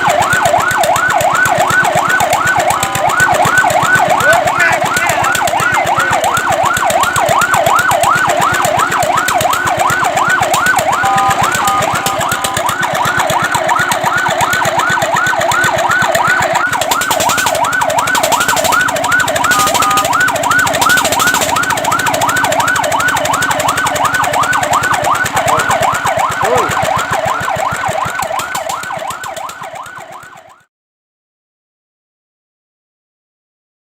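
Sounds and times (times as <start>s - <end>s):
fire truck siren yelping: 0.0s - 30.7s.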